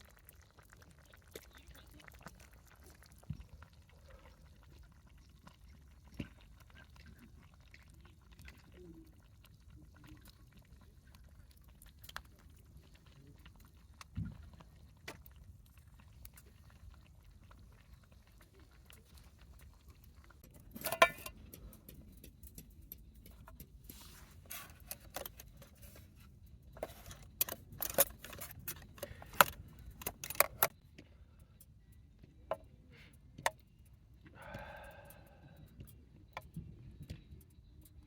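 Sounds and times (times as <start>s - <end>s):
small metal items clinking: 20.4s - 30.7s.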